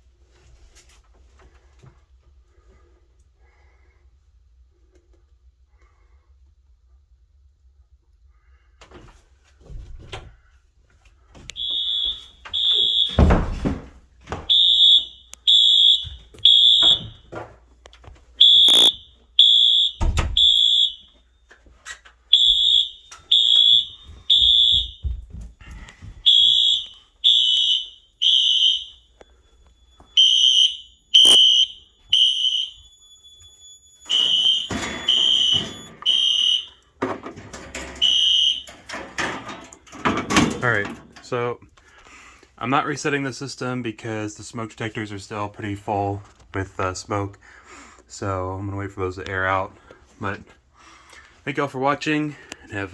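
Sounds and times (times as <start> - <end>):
fire alarm beeps: 11.4 - 13.7, 14.3 - 17.4, 18.3 - 21.6, 22.3 - 39.4
knocks and clatter: 38.8 - 41.2.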